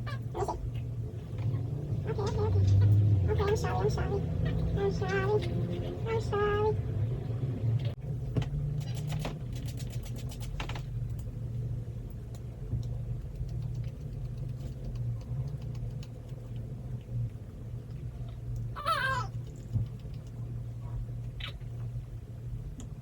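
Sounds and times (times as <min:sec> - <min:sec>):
low hum of small motor: 0:00.0 - 0:23.0
quick run of clicks: 0:08.8 - 0:11.2, 0:12.8 - 0:16.4.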